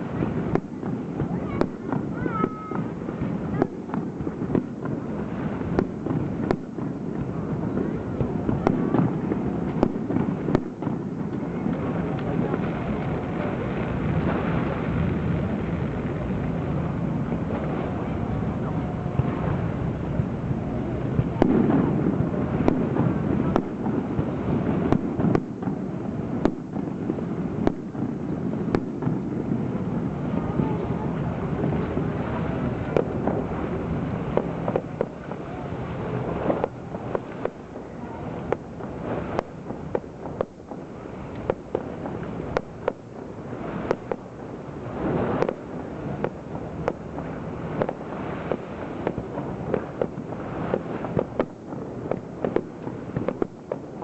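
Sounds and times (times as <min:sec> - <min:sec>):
firework shells bursting: 0:00.0 - 0:07.4, 0:08.2 - 0:12.4, 0:21.4 - 0:29.6, 0:36.2 - 0:37.8, 0:38.4 - 0:54.0
steady low rumble: 0:00.0 - 0:54.0.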